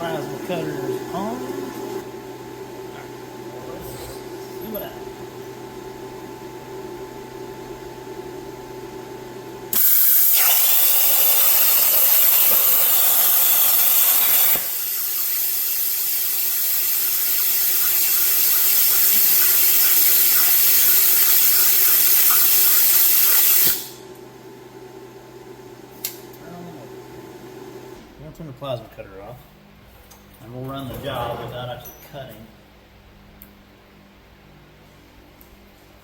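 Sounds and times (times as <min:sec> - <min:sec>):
steady hum: 0:00.0 - 0:29.9
plasma torch arc hissing: 0:09.7 - 0:24.0.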